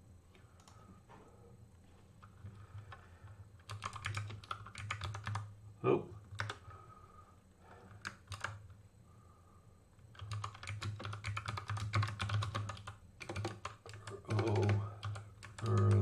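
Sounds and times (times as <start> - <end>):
clicky mechanical keyboard typing: 2.2 - 5.5, 6.3 - 6.7, 7.9 - 8.7, 10.1 - 16.0.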